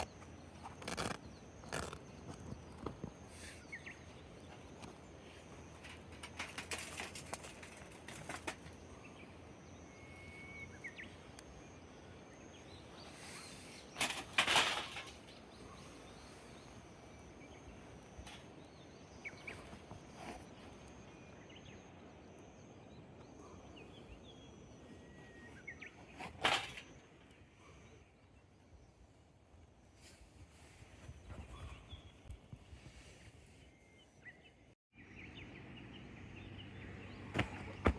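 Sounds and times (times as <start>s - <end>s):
campfire crackling: 0.0s - 3.1s
faint high chirps: 8.9s - 14.0s.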